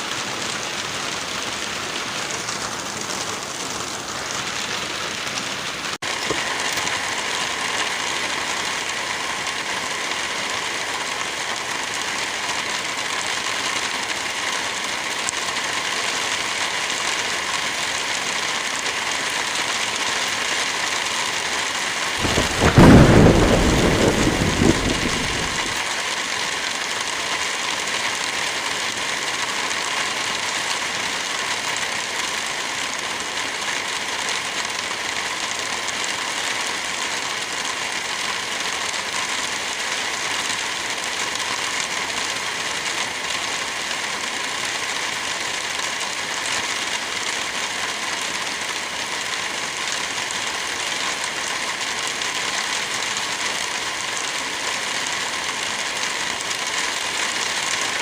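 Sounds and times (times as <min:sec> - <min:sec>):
rain hissing: 0:00.0 - 0:58.0
fireplace crackling: 0:22.2 - 0:25.8.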